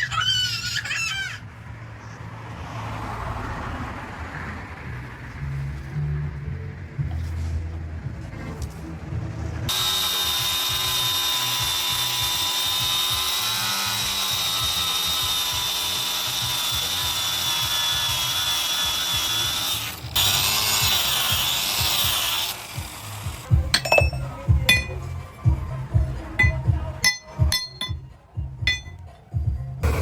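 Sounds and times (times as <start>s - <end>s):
power tool whining: 9.7s - 25.1s.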